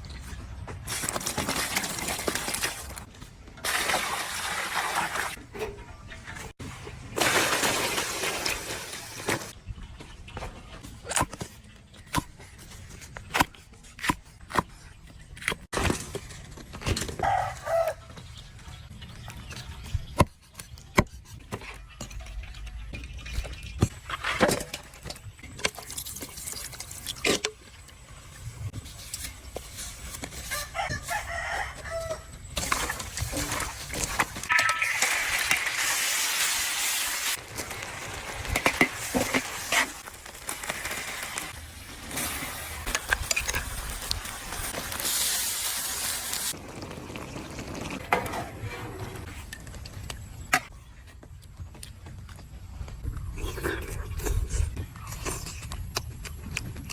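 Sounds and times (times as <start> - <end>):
rooster crowing: 30.5 - 32.4.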